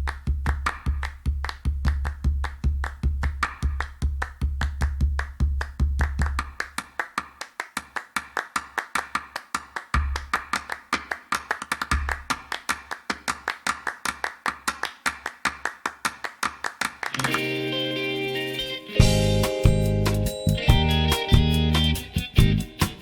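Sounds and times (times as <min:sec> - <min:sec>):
tapping percussion: 0:00.0 - 0:23.0
held chord: 0:17.2 - 0:23.0
deep bass notes: 0:19.0 - 0:23.0.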